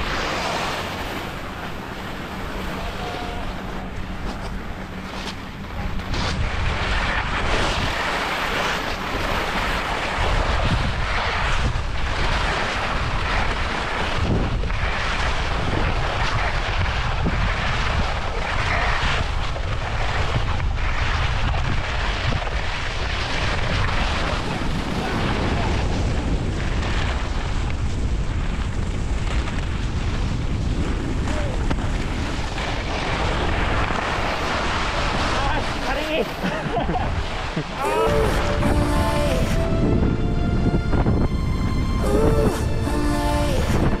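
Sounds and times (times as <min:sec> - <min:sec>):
wind buffeting microphone: 0:00.0 - 0:44.0
skis scraping over snow: 0:12.1 - 0:37.4.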